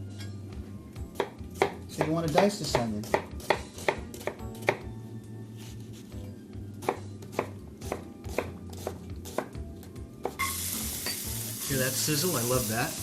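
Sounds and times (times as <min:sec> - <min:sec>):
knife chopping on cutting board: 0:01.1 - 0:05.0, 0:06.8 - 0:09.6.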